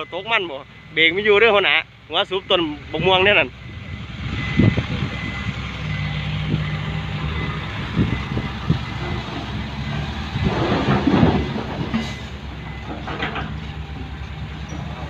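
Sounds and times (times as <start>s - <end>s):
faint high beep: 0.0s - 7.6s
truck engine running: 0.0s - 15.0s.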